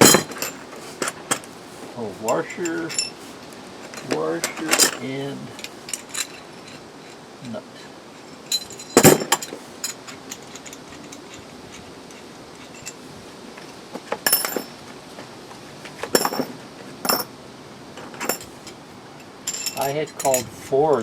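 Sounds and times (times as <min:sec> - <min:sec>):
metallic jangling: 0:00.0 - 0:01.6, 0:02.3 - 0:07.3, 0:08.2 - 0:13.1, 0:14.2 - 0:14.8, 0:16.1 - 0:17.3, 0:18.0 - 0:20.5
metal bolts clinking and clattering: 0:00.0 - 0:07.3, 0:08.1 - 0:14.8, 0:15.9 - 0:17.3, 0:18.0 - 0:20.5.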